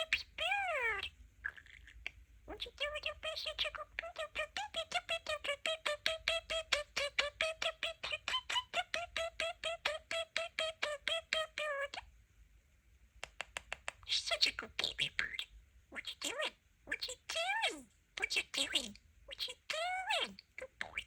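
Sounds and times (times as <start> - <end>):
faint clicks: 13.2 - 14.1.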